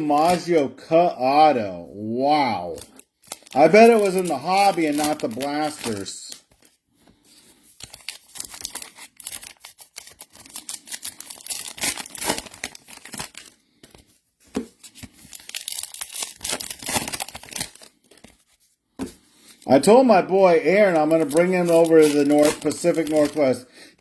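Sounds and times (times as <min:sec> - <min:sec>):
wrappers tearing and crinkling: 0:00.0 - 0:00.6, 0:02.5 - 0:14.1, 0:14.7 - 0:18.6, 0:20.4 - 0:23.6.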